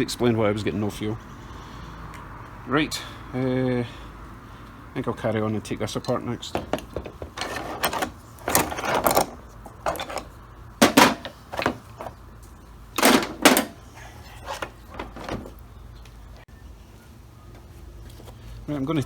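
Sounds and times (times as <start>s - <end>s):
metal parts clunking and scraping: 5.9s - 12.2s, 13.0s - 15.7s.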